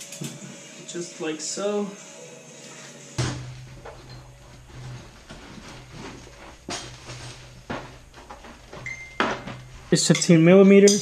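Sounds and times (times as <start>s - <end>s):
steady low hum: 3.1s - 10.0s.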